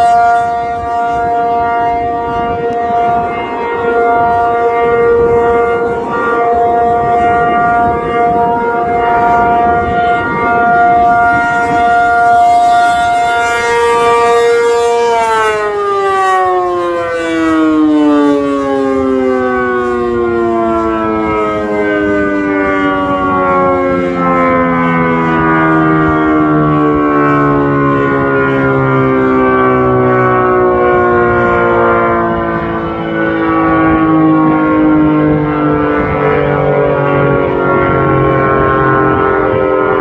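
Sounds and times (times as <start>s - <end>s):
siren winding down: 0.0s - 40.0s
warning siren two-note chord: 0.0s - 40.0s.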